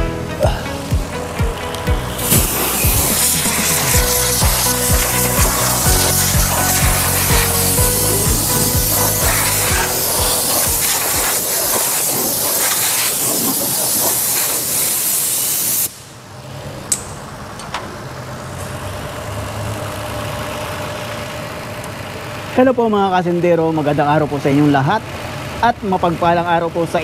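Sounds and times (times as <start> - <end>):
car engine idling: 0.0 - 12.6
loud steady hiss: 0.0 - 16.4.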